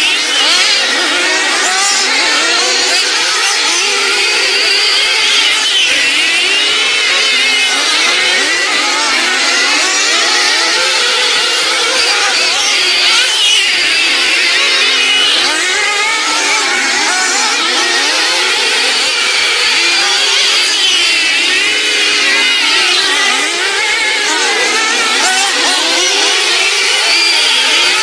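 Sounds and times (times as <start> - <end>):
small racing engines revving: 0.0 - 28.0.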